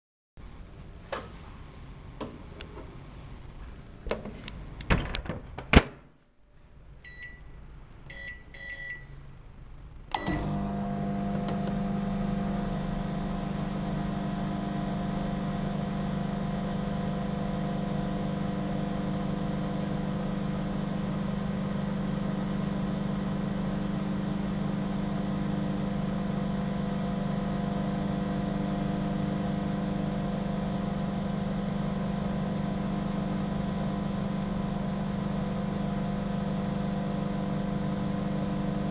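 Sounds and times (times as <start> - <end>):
high keypad beeps: 7.1 - 7.5, 8.1 - 9.2
microwave oven humming: 10.1 - 38.9.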